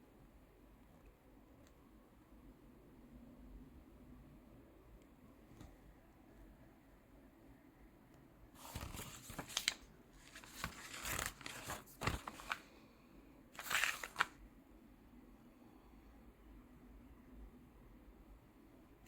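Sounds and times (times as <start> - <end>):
crinkling rustling handling noise: 8.6 - 12.7, 13.6 - 14.4.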